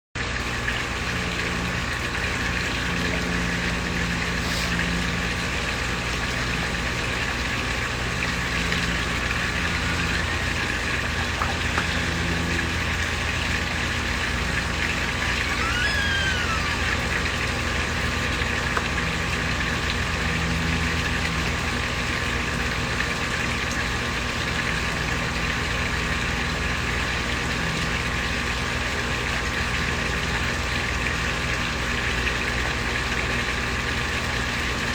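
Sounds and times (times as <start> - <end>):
waterfall splashing into pond: 0.2 - 34.9
steady low hum: 0.4 - 23.7.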